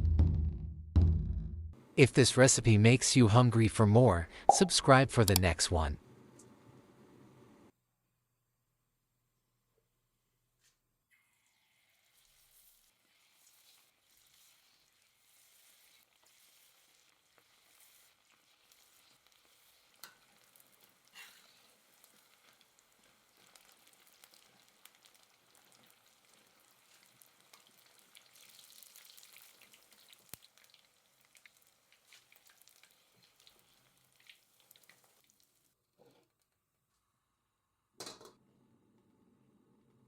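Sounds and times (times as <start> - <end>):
food sizzling in hot oil: 11.1 - 35.8.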